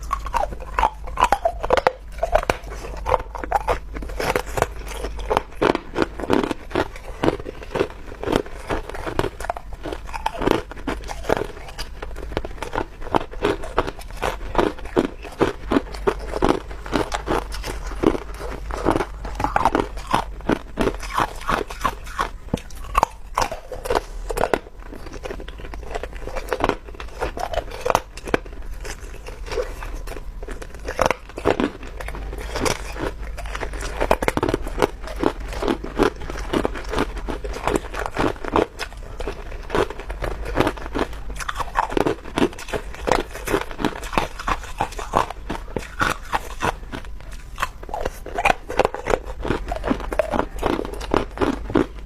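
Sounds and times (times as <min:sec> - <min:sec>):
person crunching ice: 0:00.0 - 0:52.0.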